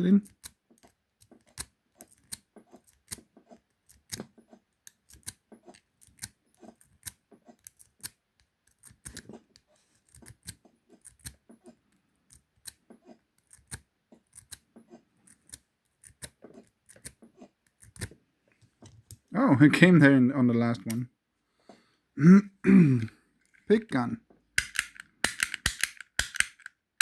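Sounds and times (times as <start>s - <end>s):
lock pick clicking in padlock: 24.6s - 26.7s.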